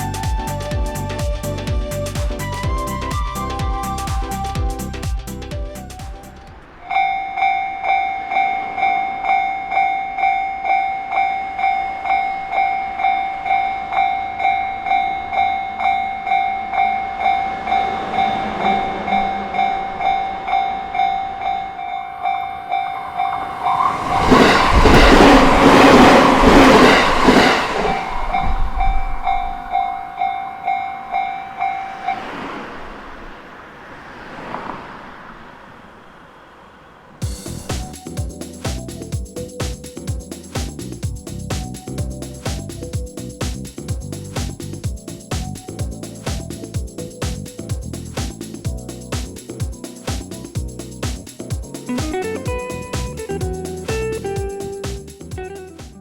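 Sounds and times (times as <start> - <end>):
train passing: 0.0 - 55.8
level-crossing electronic bell: 6.9 - 28.5, 29.7 - 32.0.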